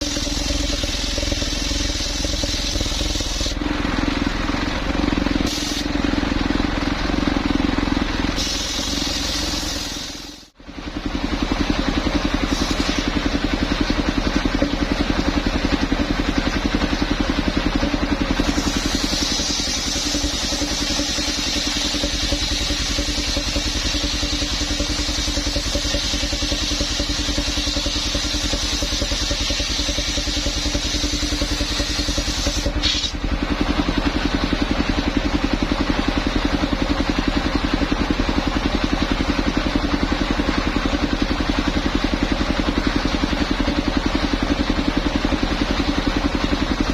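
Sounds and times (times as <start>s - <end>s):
saw blade cutting wood hiss: 0.0s - 3.6s, 5.4s - 6.1s, 8.2s - 10.5s, 12.1s - 14.6s, 18.1s - 33.2s
circular saw engine running: 0.0s - 46.9s.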